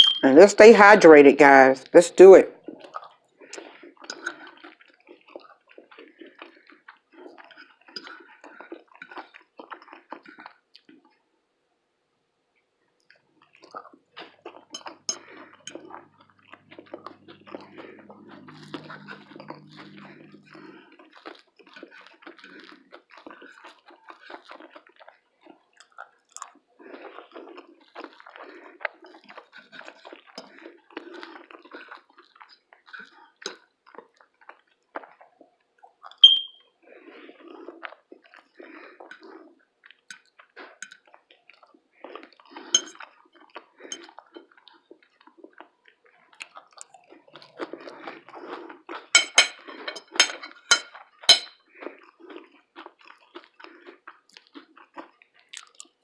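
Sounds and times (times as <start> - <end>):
short high-pitched ping: 0.0 - 0.4, 36.2 - 36.6
person chewing: 2.6 - 11.2, 13.0 - 56.0.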